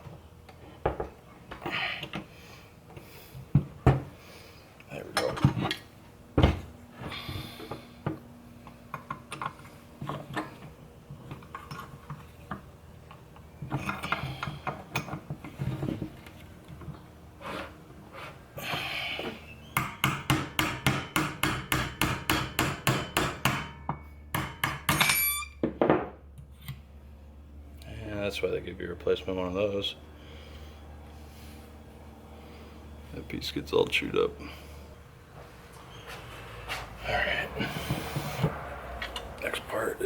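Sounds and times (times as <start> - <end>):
sharp taps on metal: 19.8 - 25.2.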